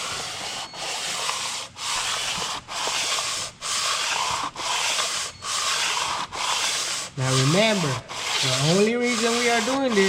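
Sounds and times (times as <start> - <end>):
sandpaper rasping on metal: 0.0 - 10.0.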